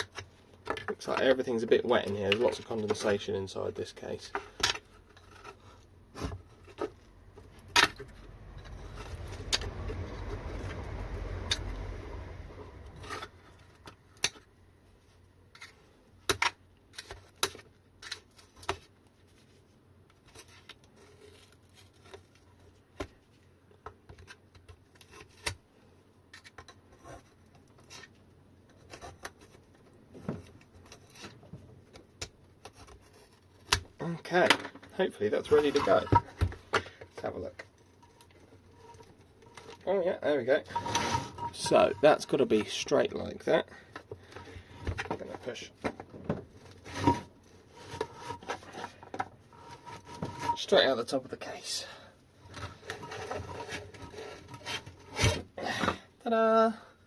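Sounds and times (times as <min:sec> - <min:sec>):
rushing noise: 0:08.4 - 0:13.3.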